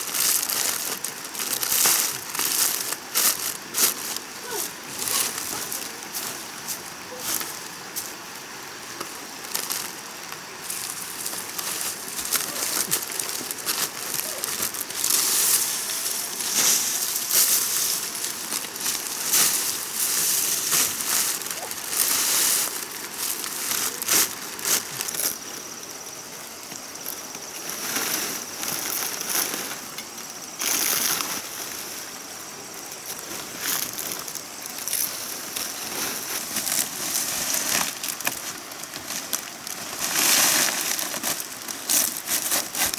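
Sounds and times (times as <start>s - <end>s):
dry material rustling and crackling: 0.0s - 42.9s.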